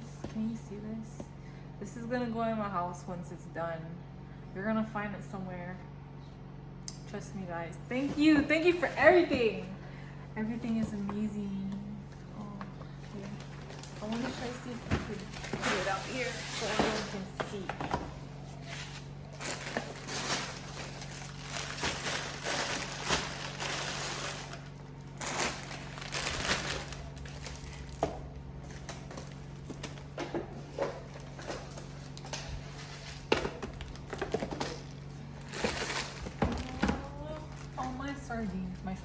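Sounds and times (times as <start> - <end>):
steady low hum: 0.0 - 39.0
packaging rustling and crinkling: 13.0 - 17.3, 18.3 - 28.0, 28.6 - 37.9.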